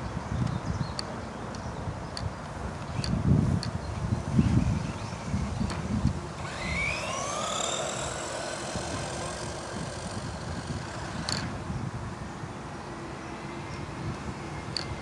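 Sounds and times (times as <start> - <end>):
low rumbling: 4.0 - 12.0
electric toy car motor whining: 4.6 - 11.7.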